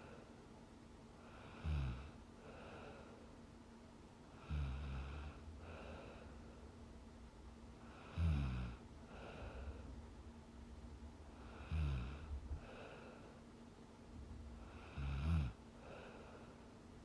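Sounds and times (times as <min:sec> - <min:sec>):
soft breath: 0:00.0 - 0:00.5, 0:01.2 - 0:03.5, 0:04.3 - 0:06.8, 0:09.0 - 0:10.1, 0:11.2 - 0:13.6, 0:14.6 - 0:17.0
woman snoring: 0:01.3 - 0:02.2, 0:04.4 - 0:06.1, 0:07.9 - 0:09.6, 0:11.4 - 0:13.0, 0:14.7 - 0:15.6.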